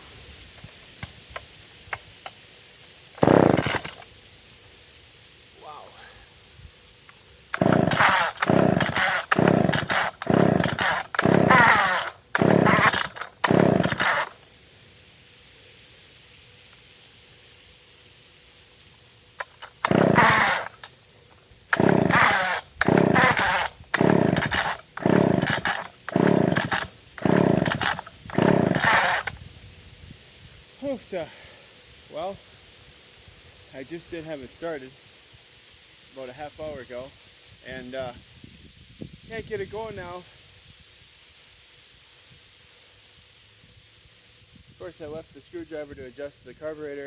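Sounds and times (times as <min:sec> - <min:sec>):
chainsaw recoil starter pulls: 0:03.2 - 0:04.1, 0:07.5 - 0:14.4, 0:19.4 - 0:21.0, 0:21.7 - 0:29.4
engine turning over: 0:03.2 - 0:04.1, 0:07.5 - 0:14.4, 0:19.4 - 0:20.9, 0:21.7 - 0:29.4.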